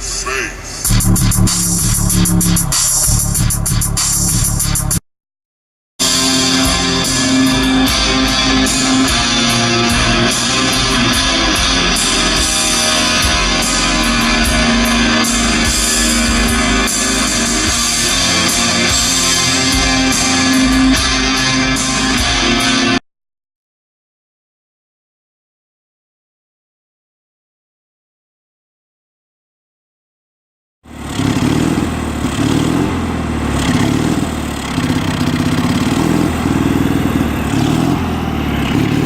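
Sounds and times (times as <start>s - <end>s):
music with strummed guitar: 6.0s - 23.0s.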